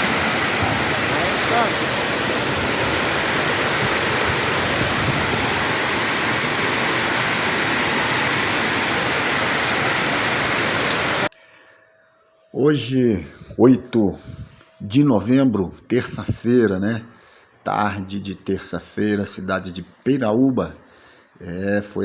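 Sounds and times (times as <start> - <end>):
heavy rain with hail: 0.0 - 11.3.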